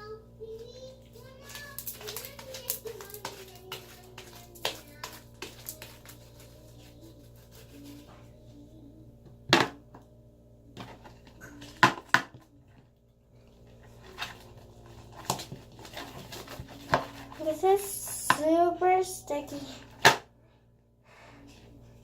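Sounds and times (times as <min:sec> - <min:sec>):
hands kneading sticky slime: 0:01.2 - 0:08.1.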